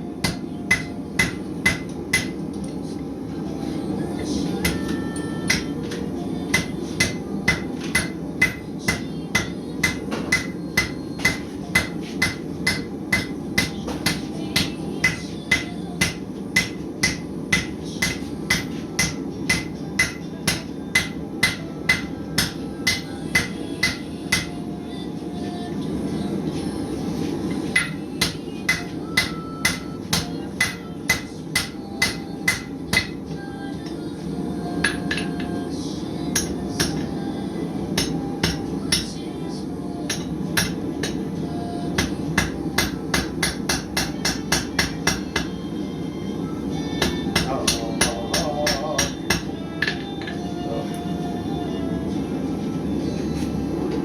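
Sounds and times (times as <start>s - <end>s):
hammer striking steel on anvil: 0.2s - 2.6s, 4.6s - 24.6s, 27.7s - 33.3s, 36.4s - 37.1s, 38.0s - 39.2s, 40.1s - 41.3s, 42.0s - 45.6s, 47.0s - 50.4s.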